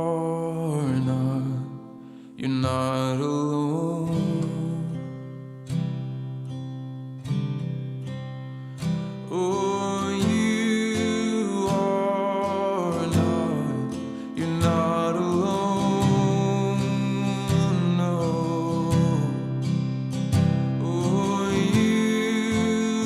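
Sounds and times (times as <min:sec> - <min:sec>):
acoustic guitar strumming: 0:00.0 - 0:23.0.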